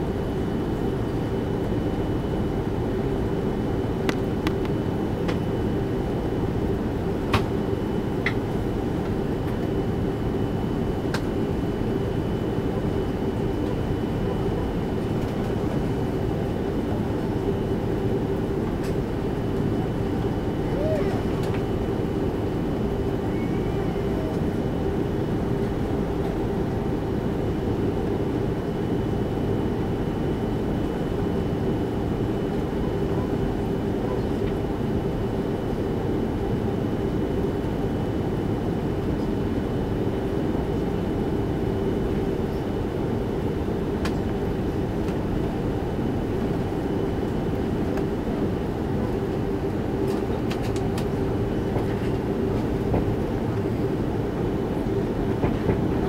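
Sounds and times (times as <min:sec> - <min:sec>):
airliner engine and airflow rumble: 0:00.0 - 0:56.0
constant hum: 0:00.0 - 0:56.0
faint high whine: 0:19.8 - 0:25.8.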